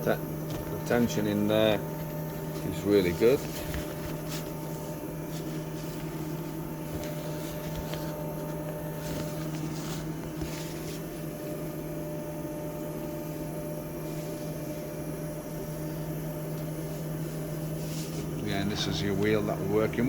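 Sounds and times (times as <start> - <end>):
electrical machinery hum: 0.0 - 20.0.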